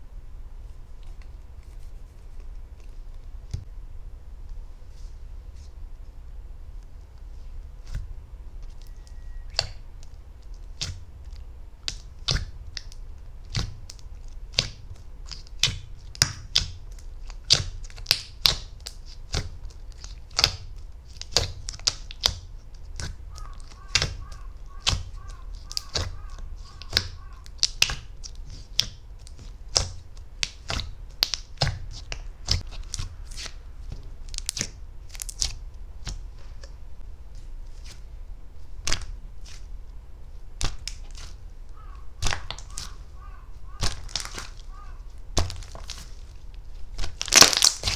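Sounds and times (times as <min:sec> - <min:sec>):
steady low hum: 0:00.0 - 0:47.9
slime clicking and popping: 0:11.8 - 0:33.5, 0:38.8 - 0:39.2, 0:42.2 - 0:42.9, 0:43.8 - 0:44.6, 0:46.9 - 0:47.9.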